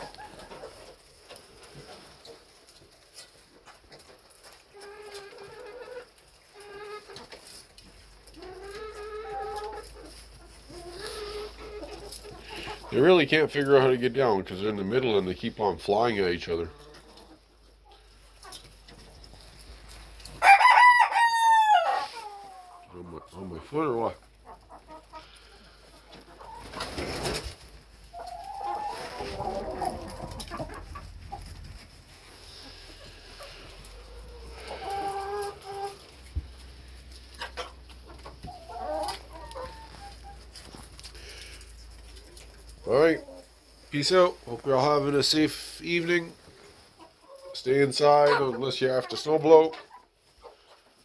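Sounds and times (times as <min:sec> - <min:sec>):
rustling: 0:00.0 - 0:20.7, 0:21.8 - 0:48.0
chickens calling: 0:00.0 - 0:51.0
chicken long drawn-out call: 0:20.3 - 0:22.8, 0:28.2 - 0:30.8, 0:32.5 - 0:36.0.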